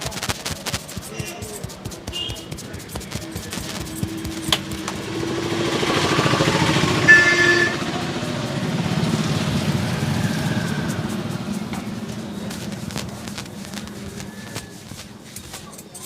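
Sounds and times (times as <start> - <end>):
short horn blast: 1.1 - 8.2
vehicle engine passing: 2.5 - 15.2.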